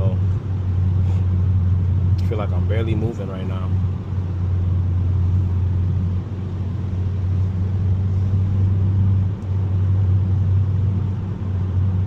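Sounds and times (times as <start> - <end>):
car engine and tyre rumble: 0.0 - 12.0.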